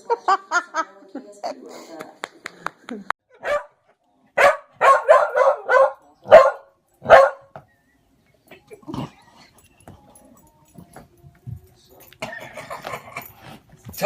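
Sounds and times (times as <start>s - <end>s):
dog barking: 3.3s - 3.8s, 4.4s - 7.6s.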